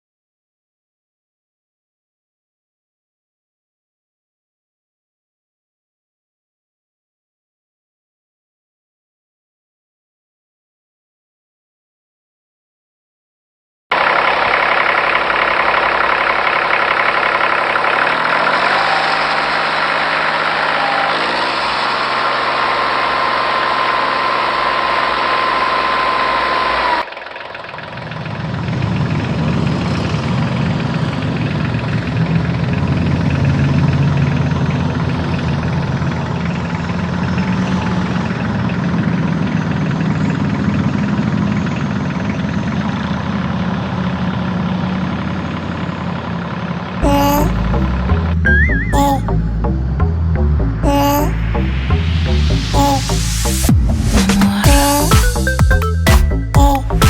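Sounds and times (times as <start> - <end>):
heavier engine running steadily: 13.9 - 57.0
vehicle engine running: 13.9 - 57.0.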